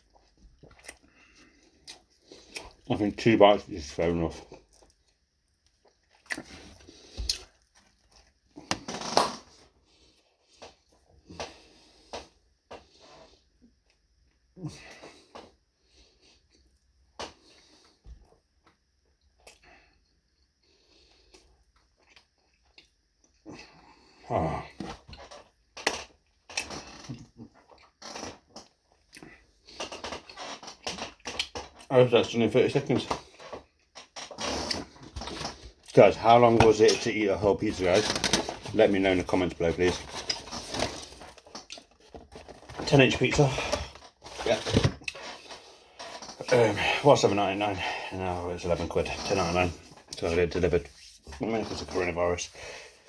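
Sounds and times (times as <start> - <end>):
crunchy pizza crust chewing: 0.0 - 2.9, 4.5 - 12.1
person chewing food: 0.0 - 2.9, 4.5 - 8.9, 18.7 - 24.0, 25.0 - 31.8, 40.2 - 42.7.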